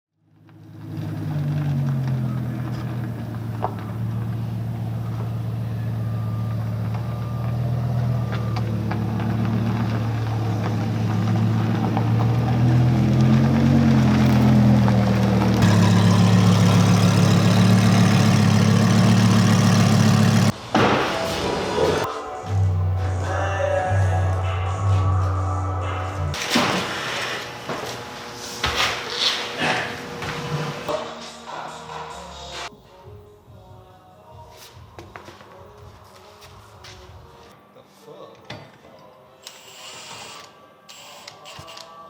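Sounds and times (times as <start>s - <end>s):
car engine idling: 0.6s - 9.4s, 14.9s - 20.6s.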